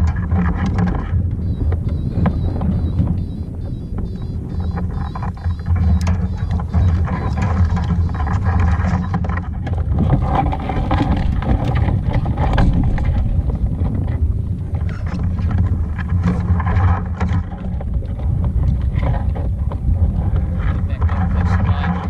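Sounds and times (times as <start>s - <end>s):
wind buffeting microphone: 0.0s - 22.0s.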